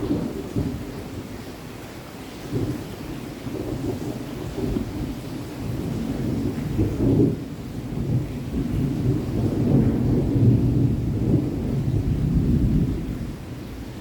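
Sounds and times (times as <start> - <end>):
steady rain: 0.0 - 14.0
distant thunder rumbling: 2.5 - 13.4.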